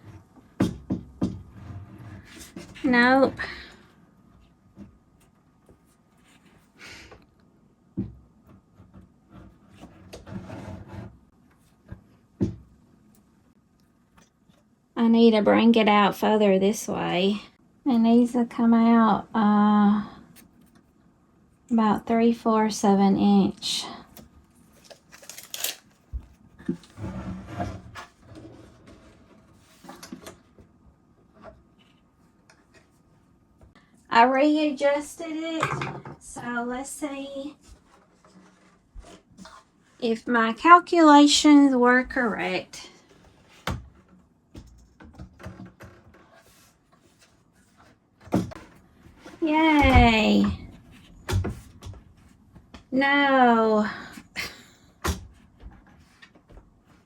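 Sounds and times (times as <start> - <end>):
rubbing and scraping: 8.5 - 12.1, 26.4 - 30.0.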